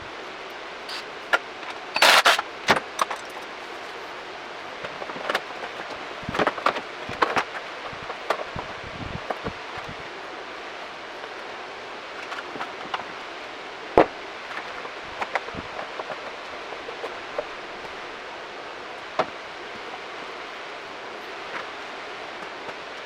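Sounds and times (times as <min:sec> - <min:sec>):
steady hiss: 0:00.0 - 0:23.0
tools and parts clicking: 0:00.9 - 0:03.5.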